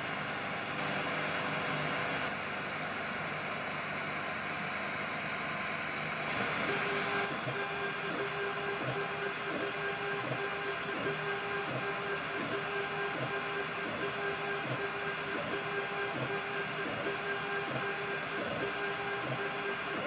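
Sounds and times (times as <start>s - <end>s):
stepper motors whining in pulses: 6.3s - 20.0s.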